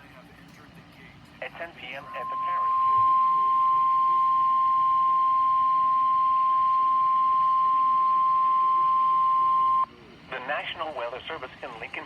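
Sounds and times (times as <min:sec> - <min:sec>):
steady warning alarm tone: 0:01.8 - 0:09.9.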